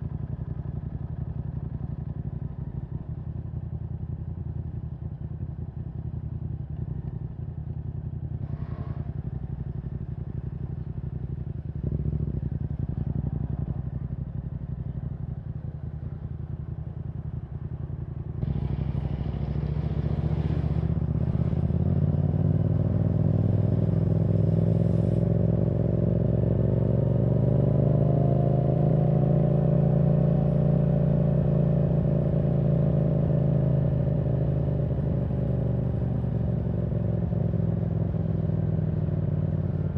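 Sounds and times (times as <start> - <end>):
motorcycle engine revving: 17.2 - 39.9.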